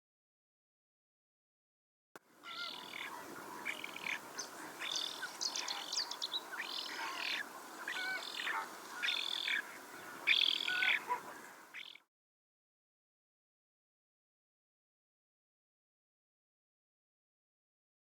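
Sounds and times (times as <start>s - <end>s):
songbird singing: 2.4s - 12.1s.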